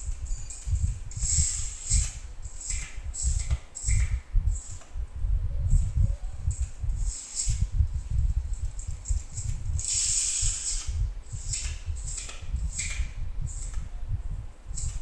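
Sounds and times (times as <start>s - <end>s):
irregular low rumble: 0.0s - 15.0s
putty knife scraping wall: 8.5s - 13.8s.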